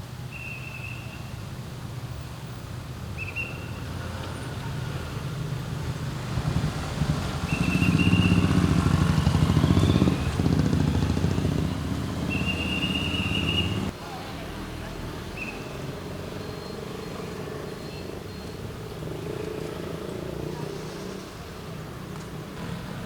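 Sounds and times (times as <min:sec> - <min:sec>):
vehicle engines passing: 0:01.4 - 0:23.0
whistle blasts: 0:06.6 - 0:13.9.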